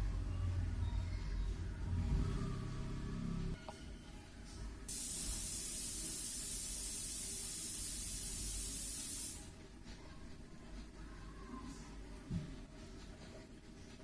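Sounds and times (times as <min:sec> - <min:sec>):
high-pitched hiss: 0:04.9 - 0:09.5.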